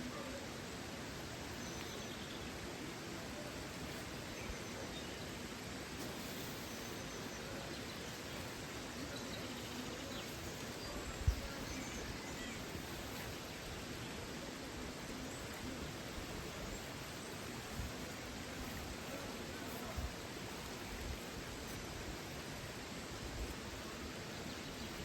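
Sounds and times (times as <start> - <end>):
faint bird chirps: 1.4 - 14.3.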